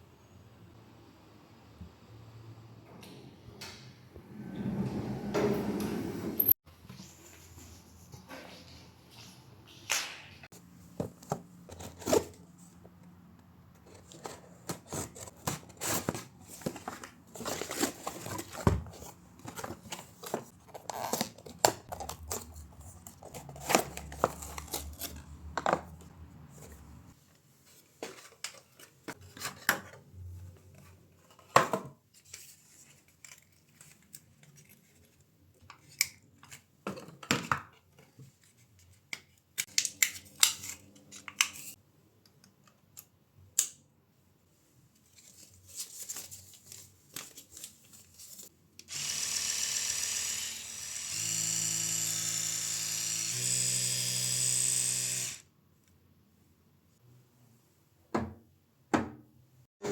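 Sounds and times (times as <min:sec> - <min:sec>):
paper or plastic tearing: 0:20.5 - 0:25.3.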